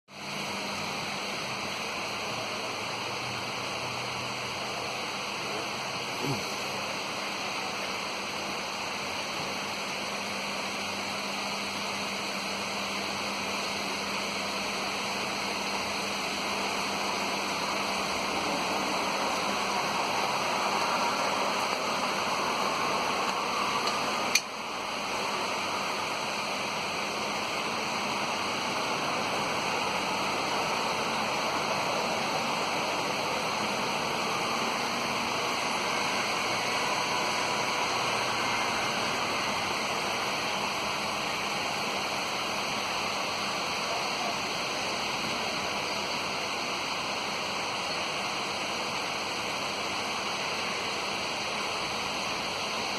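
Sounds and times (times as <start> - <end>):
heavy rain pouring: 18.2 - 26.0.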